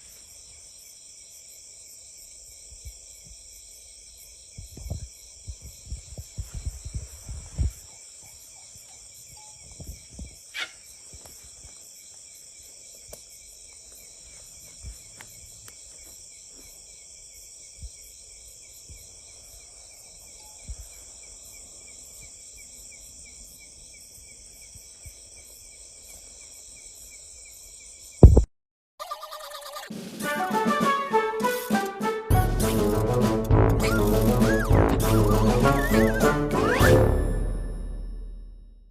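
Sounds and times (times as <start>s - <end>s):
loud thump: 28.2s - 28.5s
low knocks and bumps: 28.2s - 28.5s
insects shrilling: 32.6s - 37.0s.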